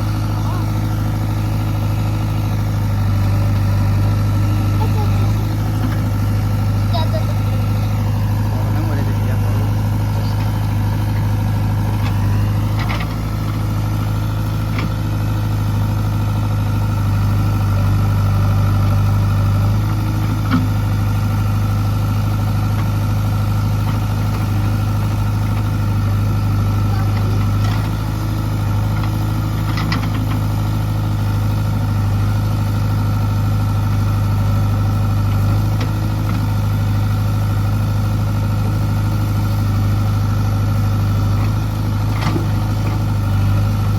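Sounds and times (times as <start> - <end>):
heavy diesel engine running: 0.0 - 43.9.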